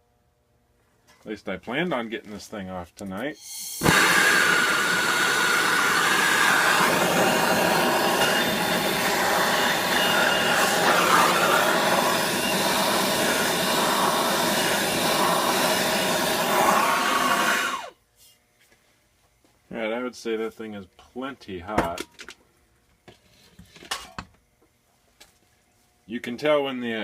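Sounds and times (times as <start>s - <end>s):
heating torch rushing blast: 3.5s - 18.0s.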